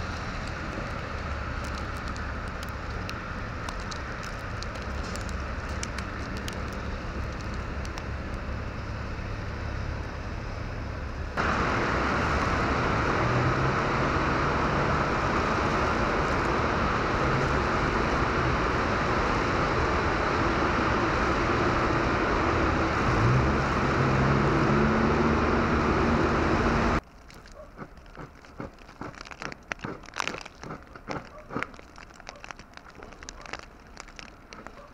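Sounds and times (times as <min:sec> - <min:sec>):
vehicles driving past: 0:00.0 - 0:27.1
engine speeding up: 0:07.6 - 0:27.0.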